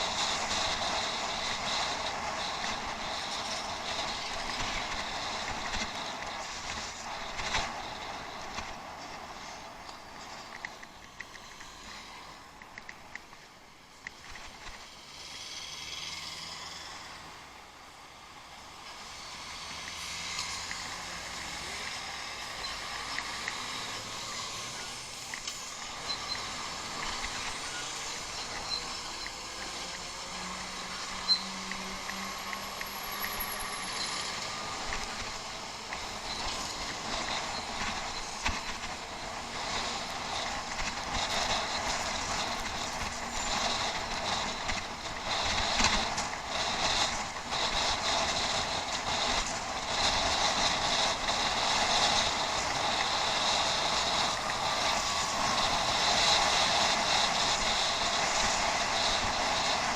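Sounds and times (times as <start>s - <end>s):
bicycle tyres on rough ground: 0.0s - 15.4s, 19.0s - 59.9s
bike clicks and rattles: 12.5s - 14.9s, 24.9s - 59.9s.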